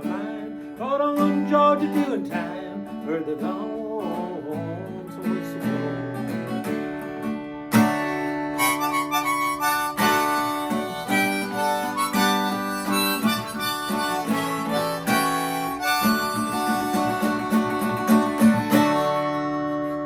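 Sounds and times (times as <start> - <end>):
strummed acoustic guitar: 0.0 - 20.0
harmonica playing: 7.7 - 20.0.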